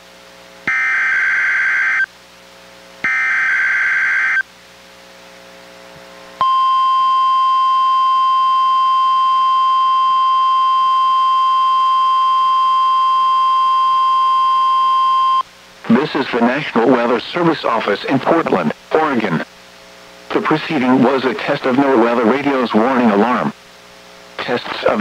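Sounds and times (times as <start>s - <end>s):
steady warning alarm tone: 0.7s - 2.1s, 3.0s - 4.4s, 6.4s - 15.4s.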